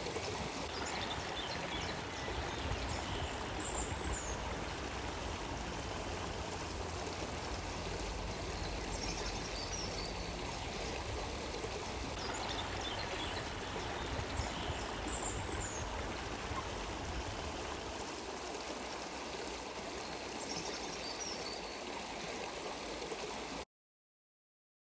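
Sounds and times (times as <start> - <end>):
stream water flowing: 0.0 - 23.6.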